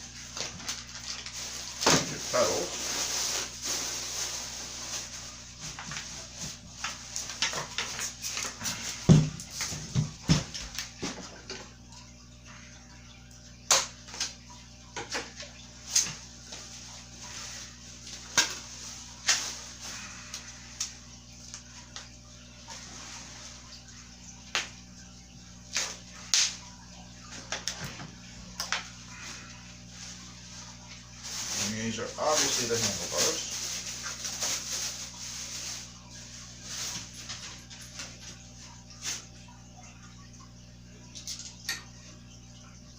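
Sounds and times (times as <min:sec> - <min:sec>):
packing material rustling: 0:00.4 - 0:07.4, 0:29.8 - 0:37.4.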